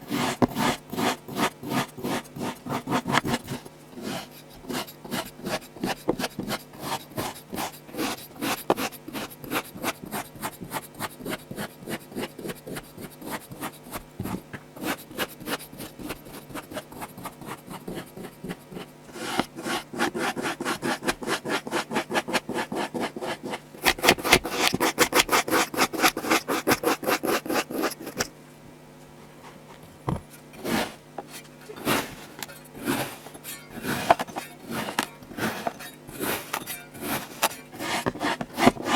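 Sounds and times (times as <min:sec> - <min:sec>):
tool scraping sand: 0:30.6 - 0:31.0, 0:31.8 - 0:38.9.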